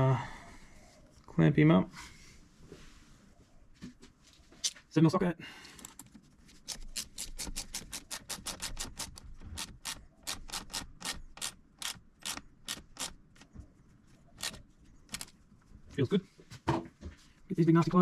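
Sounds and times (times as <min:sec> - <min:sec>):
socket ratchet clicking: 0:06.7 - 0:13.2.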